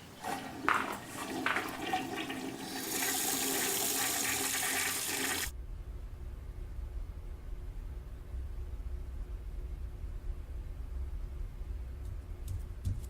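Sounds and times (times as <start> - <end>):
water hissing: 0.0 - 5.5
low hum: 5.5 - 12.4.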